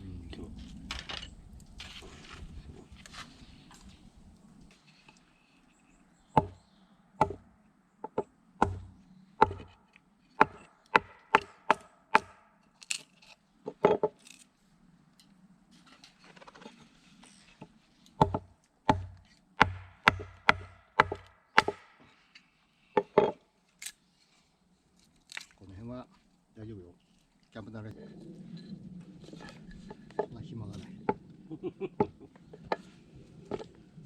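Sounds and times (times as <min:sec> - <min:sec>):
blade chopping into wood: 0:08.6 - 0:09.8, 0:10.4 - 0:12.5, 0:18.2 - 0:22.0.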